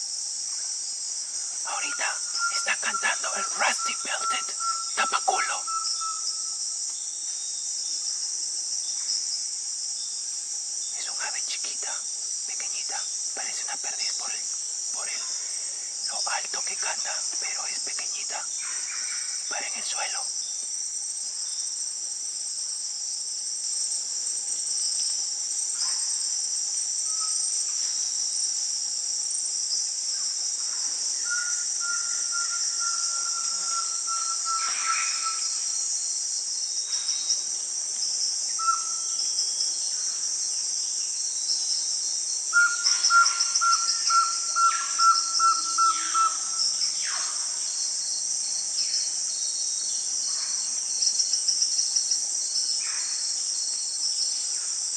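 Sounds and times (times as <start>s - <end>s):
high-pitched insect chorus: 0.0s - 54.9s
crake singing rapid repeated notes: 1.7s - 5.9s.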